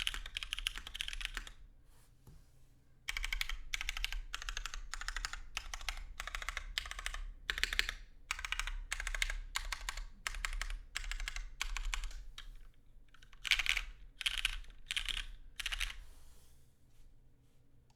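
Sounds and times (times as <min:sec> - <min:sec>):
fast typing on mechanical keyboard: 0:00.0 - 0:01.6, 0:03.1 - 0:12.5, 0:13.2 - 0:16.0.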